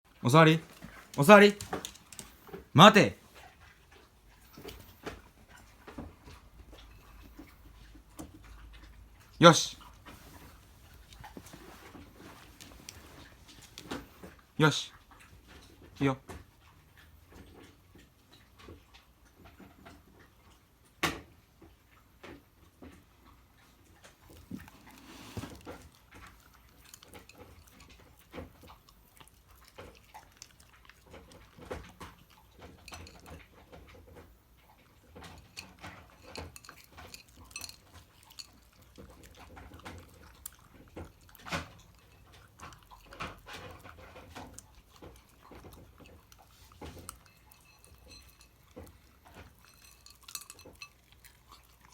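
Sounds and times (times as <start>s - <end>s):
dog crunching food: 0.2s - 8.9s, 9.6s - 14.4s, 24.0s - 51.9s
dog bowl clinking: 24.2s - 51.9s.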